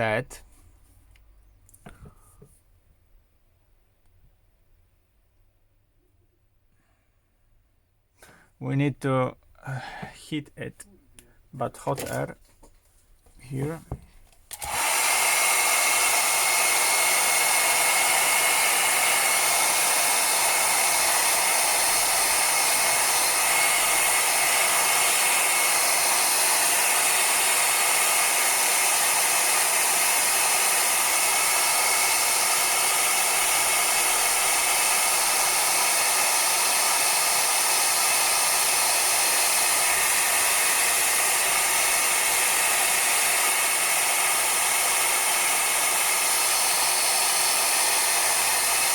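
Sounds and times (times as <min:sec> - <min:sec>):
hot air gun hissing: 0:14.5 - 0:48.9.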